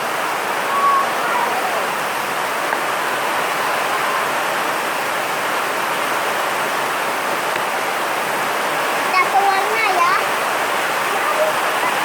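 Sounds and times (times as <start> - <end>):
steady rushing noise: 0.0 - 12.0.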